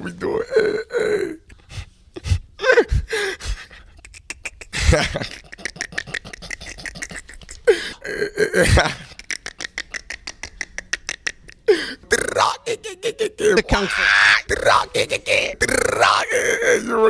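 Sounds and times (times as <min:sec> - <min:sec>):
man crying out: 0:00.4 - 0:01.5, 0:02.6 - 0:03.7, 0:07.6 - 0:09.0, 0:11.7 - 0:17.0
man making mouth clicks: 0:03.9 - 0:07.7, 0:09.1 - 0:12.6.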